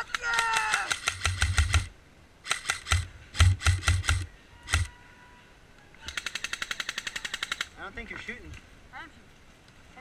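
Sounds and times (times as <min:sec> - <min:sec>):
airsoft rifle full-auto burst: 0:00.7 - 0:04.9, 0:06.1 - 0:07.8.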